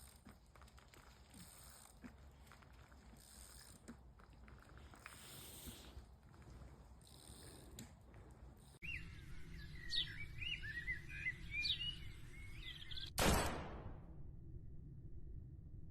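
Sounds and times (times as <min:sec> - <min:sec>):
small birds chirping: 0:08.8 - 0:13.1.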